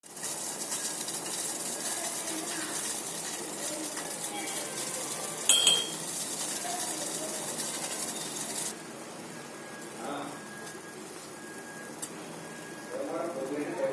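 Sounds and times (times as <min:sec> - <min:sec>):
food sizzling in a pan: 0:00.0 - 0:08.8
metal utensil clinking on pan: 0:00.2 - 0:08.7.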